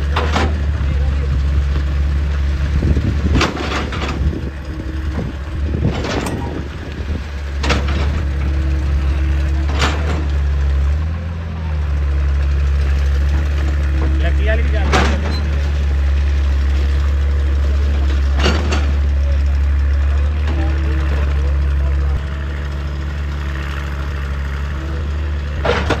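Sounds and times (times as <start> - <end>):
excavator diesel engine running: 0.0 - 26.0.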